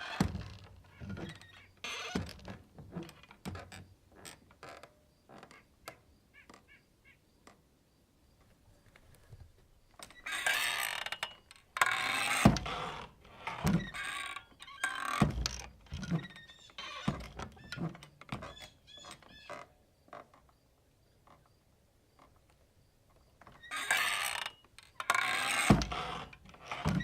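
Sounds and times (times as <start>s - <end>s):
creaking door hinges: 0.0s - 6.7s, 10.0s - 20.5s, 23.4s - 27.0s
wooden doors thudding: 26.7s - 27.0s.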